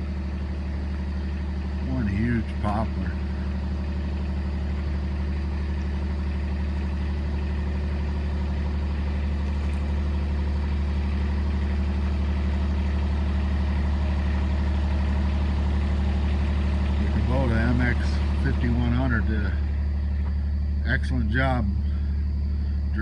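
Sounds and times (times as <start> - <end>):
diesel tractor engine idling: 0.0 - 23.0.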